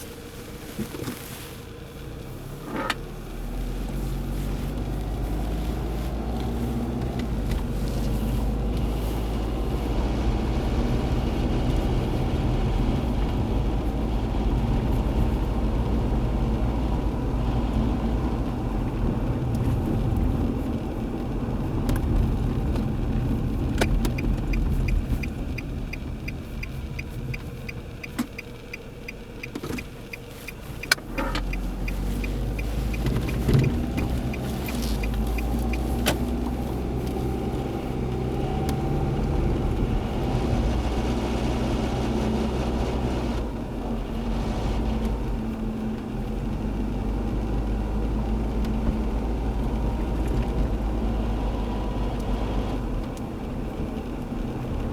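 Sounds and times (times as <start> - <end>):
car engine rumbling: 0.0 - 54.9
fast ticking: 23.6 - 36.4.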